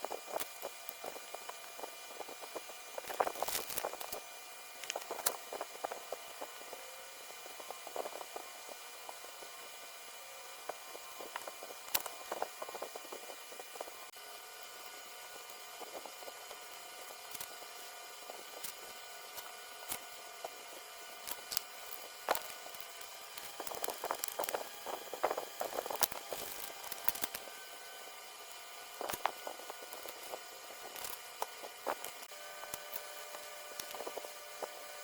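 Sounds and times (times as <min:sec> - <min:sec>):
faint electrical whine: 0:00.0 - 0:35.0
hand tools clicking on circuit board: 0:21.2 - 0:27.5, 0:29.0 - 0:34.7.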